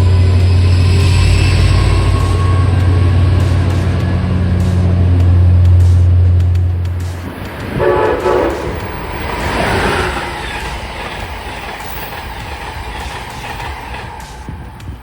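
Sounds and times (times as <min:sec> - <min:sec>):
train horn blast: 0:00.0 - 0:11.4
passing train rushing: 0:00.0 - 0:15.0.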